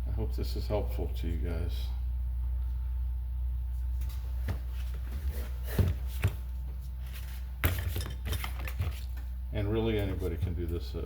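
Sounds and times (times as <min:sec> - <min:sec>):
steady low hum: 0:00.0 - 0:11.0.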